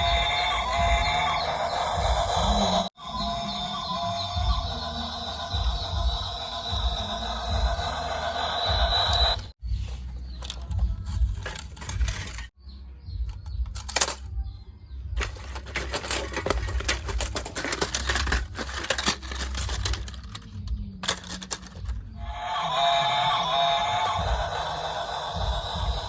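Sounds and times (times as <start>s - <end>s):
small hard objects clattering: 10.3s - 12.5s, 15.2s - 22.2s.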